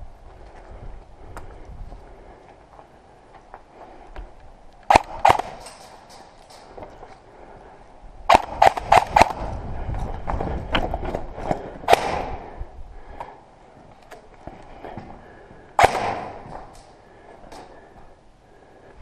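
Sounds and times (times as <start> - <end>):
airsoft gun shots: 4.9 - 5.8, 8.3 - 9.5, 11.9 - 12.5, 15.8 - 16.5.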